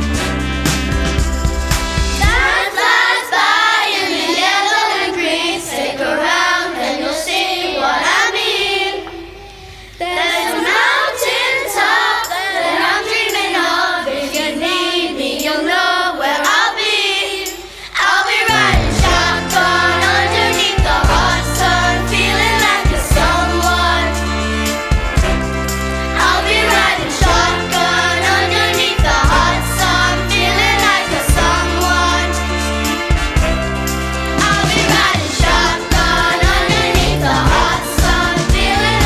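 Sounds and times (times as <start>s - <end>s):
drums and bass: 0.0s - 2.6s, 18.5s - 39.0s
young voices singing: 2.2s - 25.4s, 26.1s - 39.0s.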